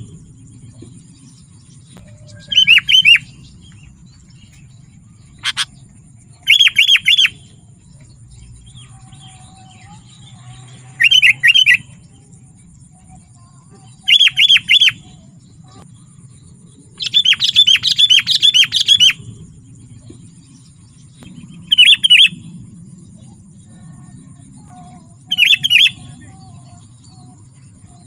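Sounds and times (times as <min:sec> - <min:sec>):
bird chattering calls: 0:01.4 - 0:12.0, 0:13.4 - 0:15.9, 0:17.0 - 0:19.3, 0:21.7 - 0:22.4, 0:25.0 - 0:26.5.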